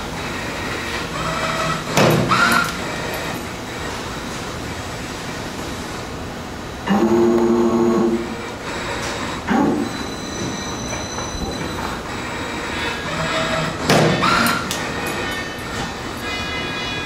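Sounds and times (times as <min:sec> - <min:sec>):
spring forming machine running: 0:00.0 - 0:17.0
high metallic whine: 0:06.8 - 0:17.0
scraping squeals: 0:08.8 - 0:17.0
metal clanks: 0:13.8 - 0:16.6.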